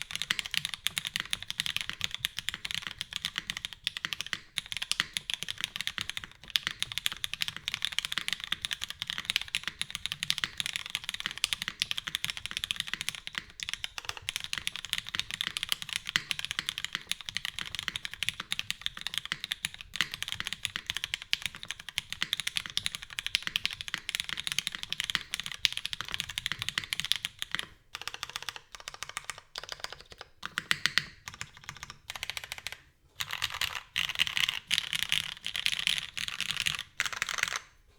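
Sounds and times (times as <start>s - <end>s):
mechanical keyboard typing: 0.0s - 37.8s.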